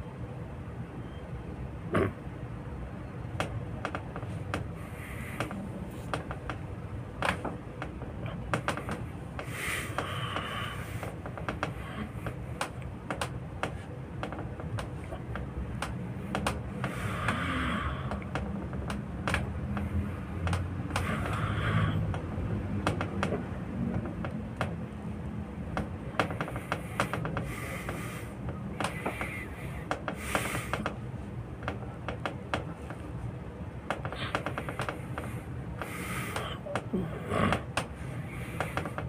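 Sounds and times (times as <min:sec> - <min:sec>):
hands patting on a back: 0:03.4 - 0:17.4, 0:25.7 - 0:31.0
person breathing: 0:04.7 - 0:06.3, 0:09.0 - 0:12.6, 0:16.8 - 0:18.4, 0:19.8 - 0:22.1, 0:26.4 - 0:31.0, 0:34.1 - 0:39.0.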